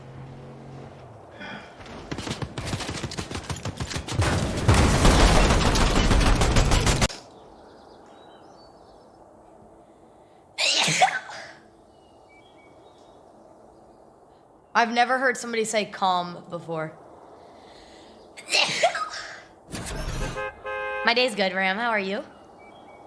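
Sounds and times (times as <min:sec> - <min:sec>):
video game gunfire: 0:01.8 - 0:07.1.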